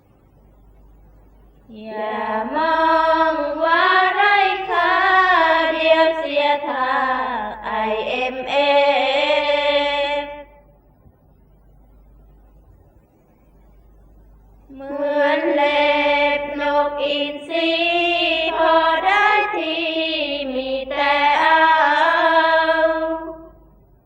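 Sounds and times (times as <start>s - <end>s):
voices chanting melodic line: 1.7s - 10.6s, 14.7s - 23.7s.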